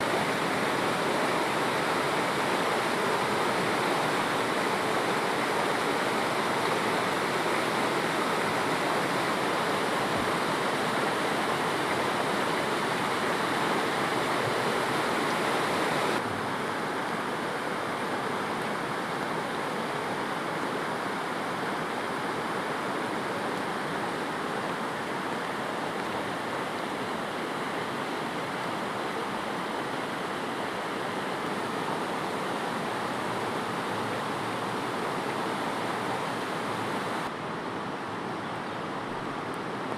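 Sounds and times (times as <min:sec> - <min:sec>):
river water rushing: 0:00.0 - 0:39.9.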